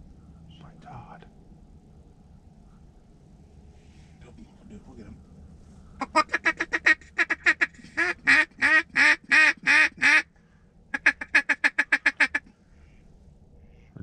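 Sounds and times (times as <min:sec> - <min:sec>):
duck call quacking: 0:06.0 - 0:10.3, 0:11.0 - 0:12.5.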